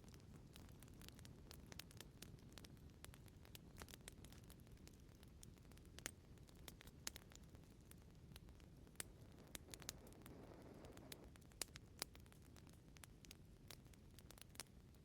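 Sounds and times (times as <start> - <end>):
low rumble of flames: 0.0 - 15.0
wood fire crackling: 0.0 - 15.0
fire hissing: 9.2 - 11.4.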